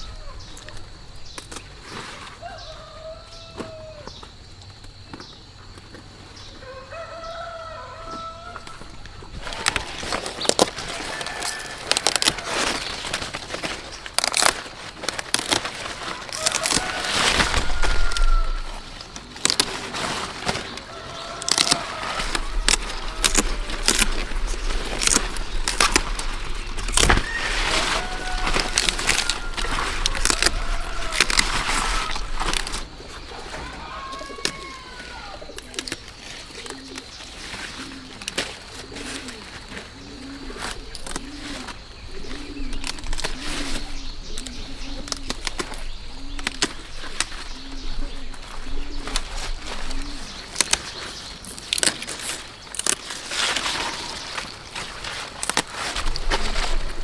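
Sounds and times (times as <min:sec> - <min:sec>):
sharp cracks and snaps: 0:09.4 - 0:32.9, 0:35.5 - 0:37.2, 0:42.6 - 0:47.6, 0:49.0 - 0:57.0
high bird calls: 0:20.5 - 0:57.0
dove cooing: 0:20.6 - 0:51.4, 0:56.0 - 0:57.0.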